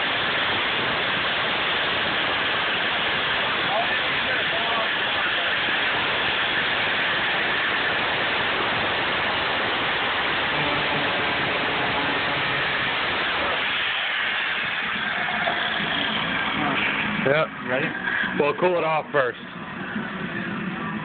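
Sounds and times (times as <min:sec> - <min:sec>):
angle grinder cutting metal: 0:10.1 - 0:19.0.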